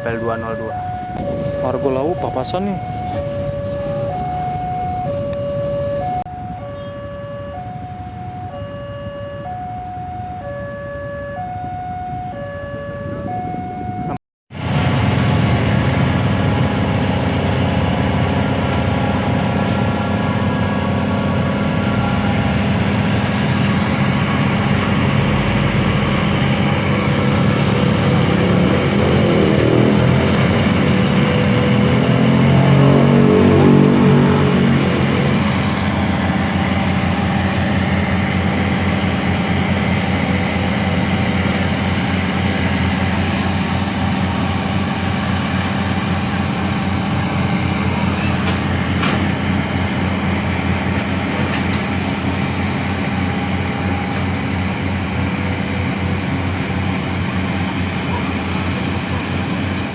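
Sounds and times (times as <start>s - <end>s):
train rumbling past: 0.0s - 5.0s, 5.8s - 59.9s
level crossing two-tone alarm: 0.0s - 14.2s.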